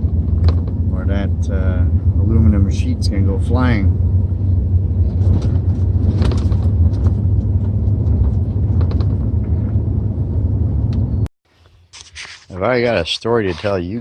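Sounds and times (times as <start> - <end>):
light rattles and clicks: 0.0 - 0.9, 5.0 - 9.8
truck engine and road noise: 0.0 - 14.0.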